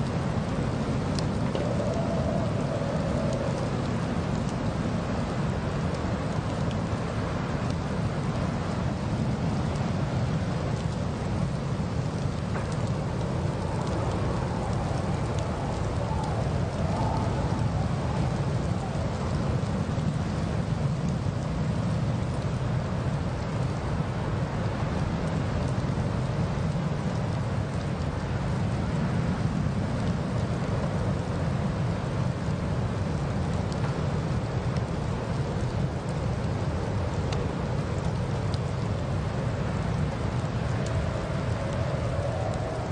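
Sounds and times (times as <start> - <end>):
road and wind noise rumble: 0.0 - 42.9
faint ticks: 1.1 - 4.6, 12.0 - 20.1.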